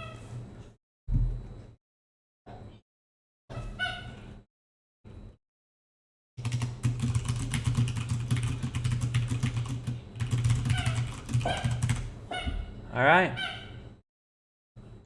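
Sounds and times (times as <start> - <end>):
rapid keyboard typing: 6.4 - 12.2.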